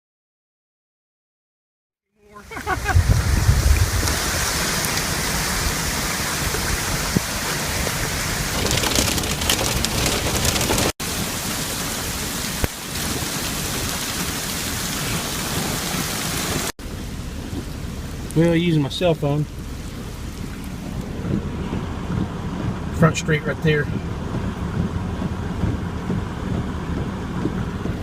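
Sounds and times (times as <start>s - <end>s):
heavy rain: 2.3s - 28.0s
strong wind: 2.4s - 16.7s.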